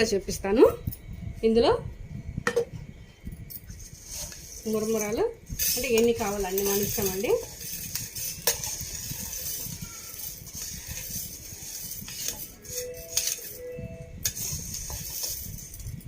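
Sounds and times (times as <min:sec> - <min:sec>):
puffed rice pouring: 0:03.9 - 0:16.0.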